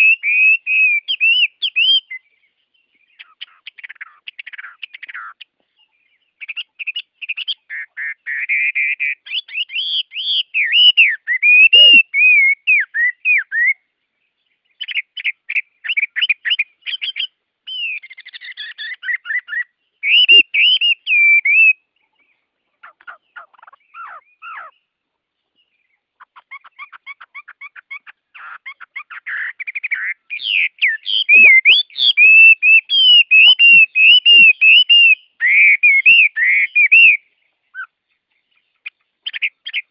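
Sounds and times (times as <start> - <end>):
songbirds singing and trilling: 0.0 - 39.9.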